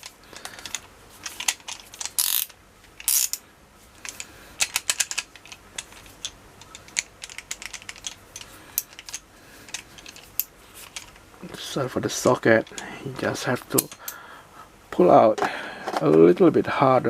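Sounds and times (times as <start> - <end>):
hand ratchet clicking: 0.0 - 3.4, 4.0 - 11.2.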